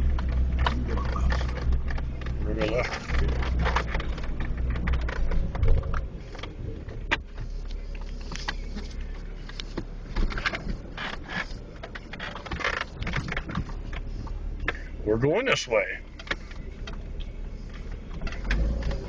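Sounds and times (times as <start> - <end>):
vehicle body knocks and rattles: 0.0 - 7.6, 9.8 - 14.9
low engine rumble: 0.0 - 19.0.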